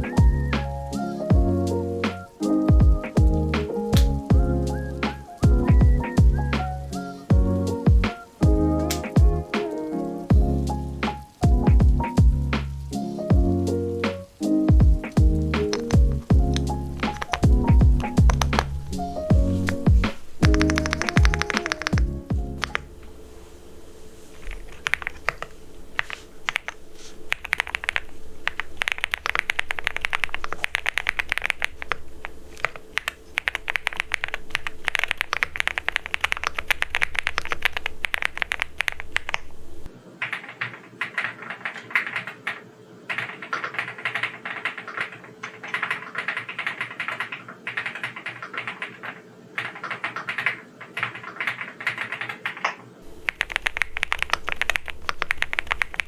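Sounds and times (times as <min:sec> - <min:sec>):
mechanical keyboard typing: 0:15.0 - 0:22.9, 0:24.4 - 0:56.0
low hum: 0:15.2 - 0:35.6.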